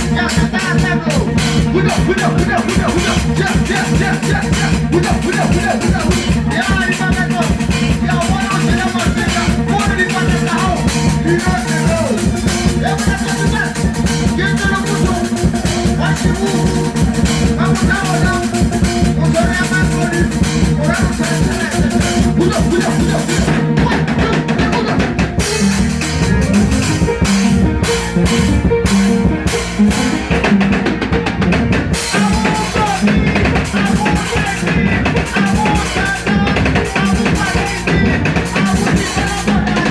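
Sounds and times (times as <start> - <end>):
wavering melodic lead line: 0.0 - 39.8
drum kit beat: 0.0 - 39.9.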